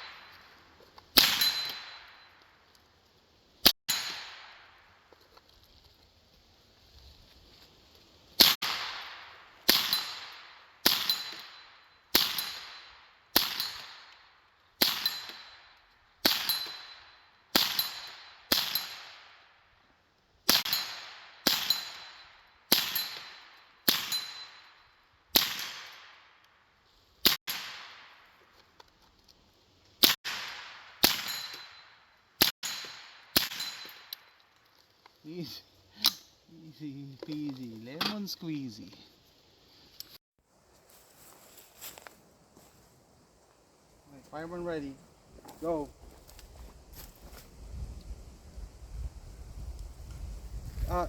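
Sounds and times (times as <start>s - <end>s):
rifle gunshots with echo: 8.4s - 11.4s, 25.4s - 26.2s.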